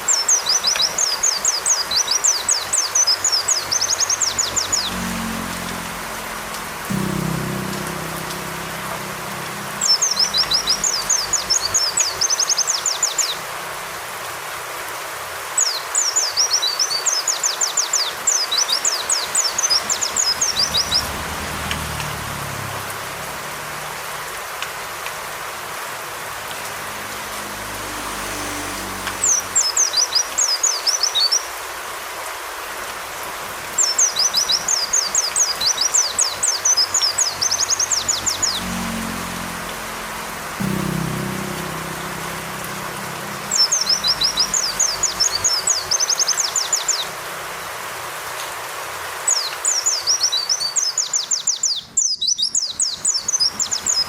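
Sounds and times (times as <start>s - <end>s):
rain hiss: 0.0s - 51.5s
bird twittering: 51.1s - 54.0s.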